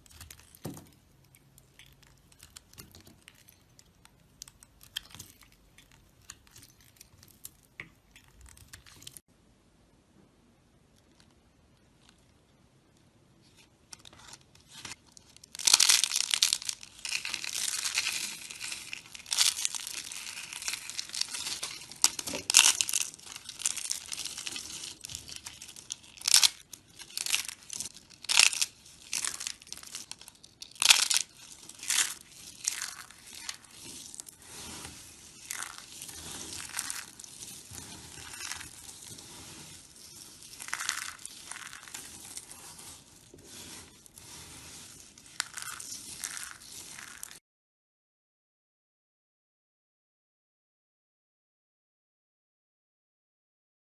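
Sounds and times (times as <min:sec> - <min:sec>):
knife scraping bar soap: 0:31.9 - 0:46.9.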